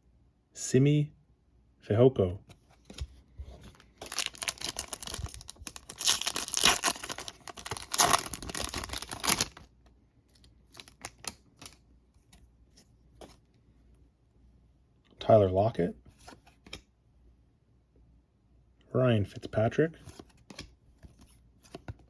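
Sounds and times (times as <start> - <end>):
plastic wrapper crinkling and tearing: 3.7 - 9.7, 10.4 - 11.8.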